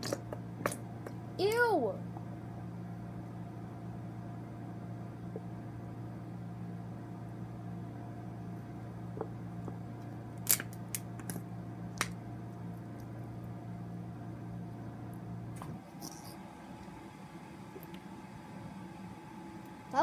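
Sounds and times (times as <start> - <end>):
appliance humming: 0.0 - 20.0.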